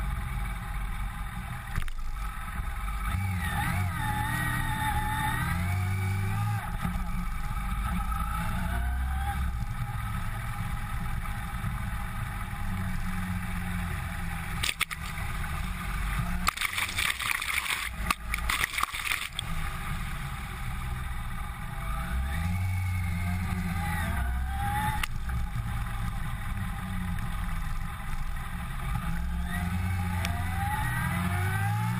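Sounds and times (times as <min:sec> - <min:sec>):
vehicle rumble: 0:00.0 - 0:31.9
water splashing: 0:14.6 - 0:15.3, 0:16.4 - 0:19.6.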